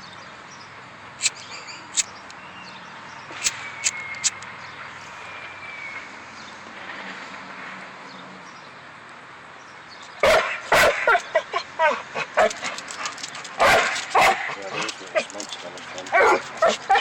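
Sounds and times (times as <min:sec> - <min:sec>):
dog barking and yipping: 0:10.2 - 0:17.0.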